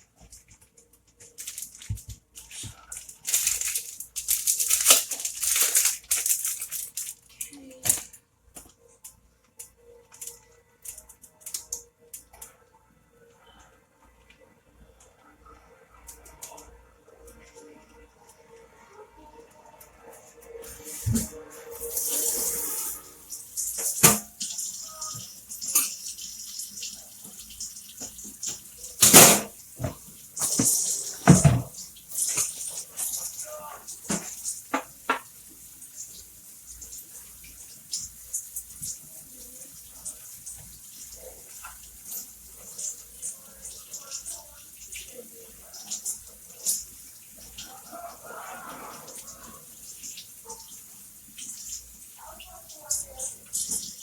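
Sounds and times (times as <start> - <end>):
water running in sink: 20.6 - 54.0.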